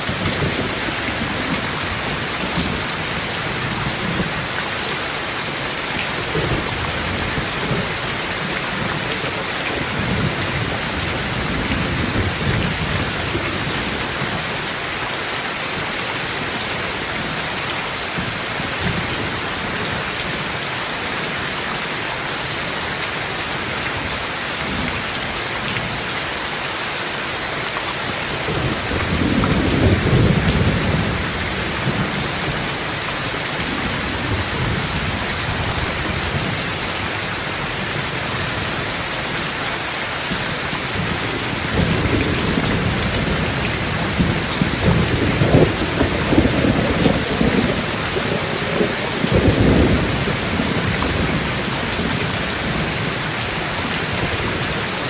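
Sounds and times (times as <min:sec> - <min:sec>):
steady rain: 0:00.0 - 0:55.0
low thunder rumbling: 0:28.4 - 0:32.8, 0:40.6 - 0:53.1.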